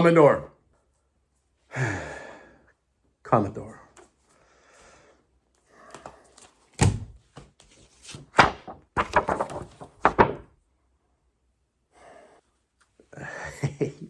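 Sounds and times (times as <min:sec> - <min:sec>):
thumps and knocks: 0:08.4 - 0:10.6.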